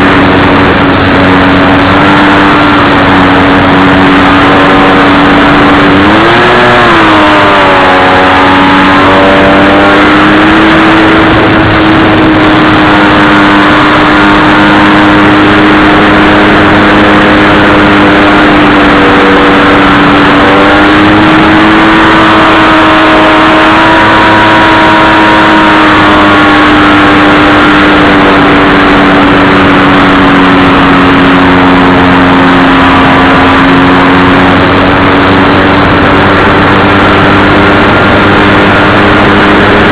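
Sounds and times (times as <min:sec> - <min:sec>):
model plane motor buzzing: 0:00.0 - 0:39.9.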